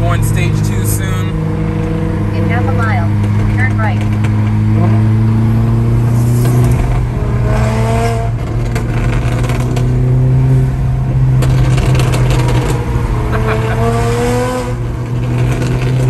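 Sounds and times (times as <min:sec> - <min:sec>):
car engine droning through exhaust: 0:00.0 - 0:16.0
sharp exhaust pops: 0:03.1 - 0:04.9, 0:08.3 - 0:10.0, 0:11.4 - 0:12.9.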